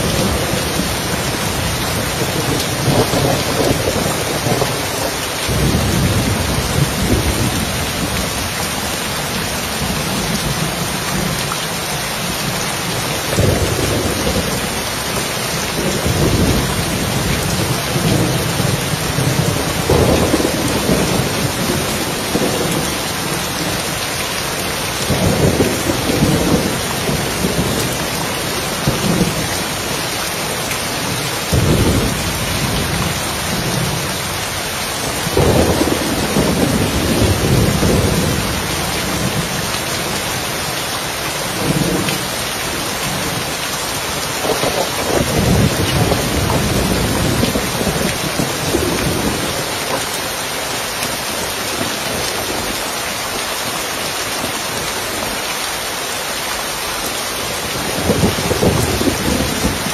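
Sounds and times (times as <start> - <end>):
thunder rumbling: 0.0 - 8.9, 12.4 - 23.9, 24.6 - 34.4, 35.2 - 40.2, 44.3 - 50.1, 57.6 - 59.9
rain on a roof: 0.0 - 59.9.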